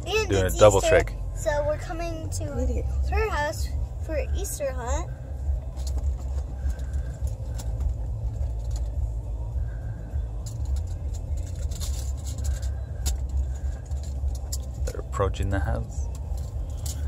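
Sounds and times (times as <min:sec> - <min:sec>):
car engine rumbling: 0:00.0 - 0:17.0
light clicks and rattles: 0:05.6 - 0:09.2, 0:10.2 - 0:15.1, 0:16.0 - 0:17.0.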